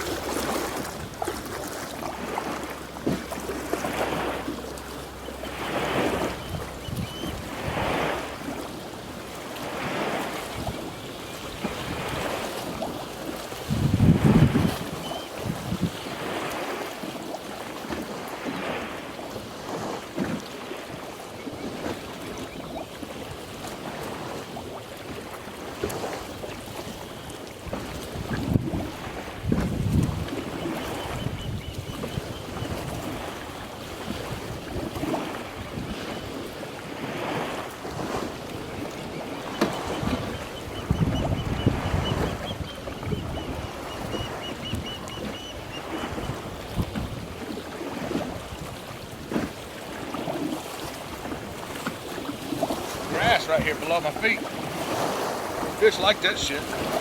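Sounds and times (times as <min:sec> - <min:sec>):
water sloshing in swells: 0:00.0 - 0:57.0
wind rumble on microphone: 0:05.8 - 0:08.6, 0:09.9 - 0:16.6, 0:27.6 - 0:39.0, 0:39.7 - 0:50.1.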